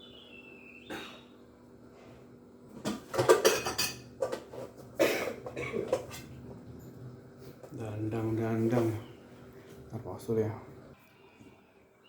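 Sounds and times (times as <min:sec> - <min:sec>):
metal pots clattering: 0:02.8 - 0:06.5.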